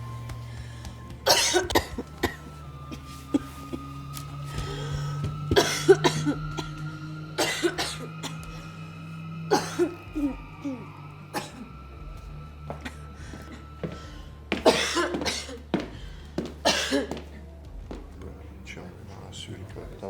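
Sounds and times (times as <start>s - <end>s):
low hum: 0.0s - 16.6s
person coughing: 1.3s - 3.9s, 4.7s - 8.6s, 9.5s - 11.7s, 14.5s - 15.6s, 16.6s - 17.4s.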